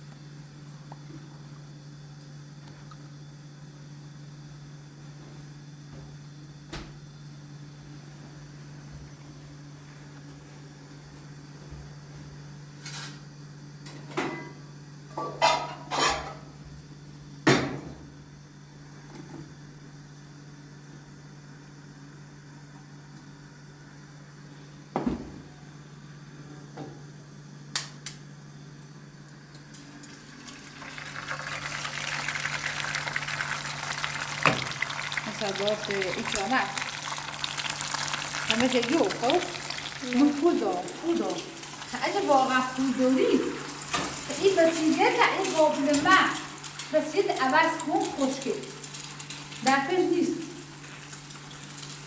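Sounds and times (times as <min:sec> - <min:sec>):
pots and dishes clinking: 0:15.1 - 0:16.4.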